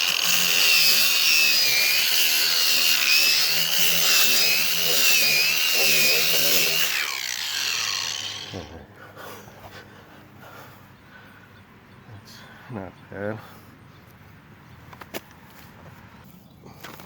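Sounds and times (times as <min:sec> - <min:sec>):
power grinder whining: 0:00.0 - 0:08.9.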